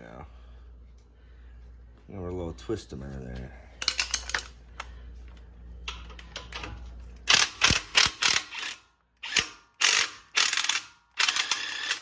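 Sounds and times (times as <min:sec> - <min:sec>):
ratchet wrench clicking: 0:07.3 - 0:12.0.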